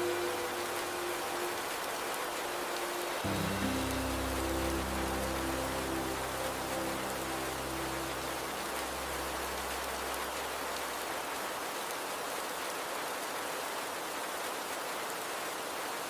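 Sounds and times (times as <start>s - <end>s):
river water flowing: 0.0s - 16.0s
steady rain: 0.0s - 16.0s.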